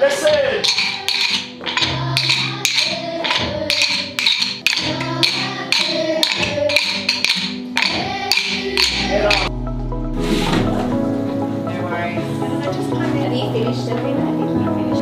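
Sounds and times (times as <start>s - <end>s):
held pitched notes: 7.8s - 13.4s.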